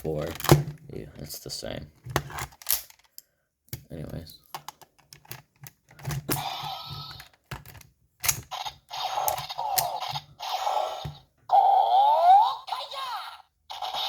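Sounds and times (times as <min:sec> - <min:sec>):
toy electronic sound effects: 0:06.4 - 0:07.3, 0:08.4 - 0:14.0.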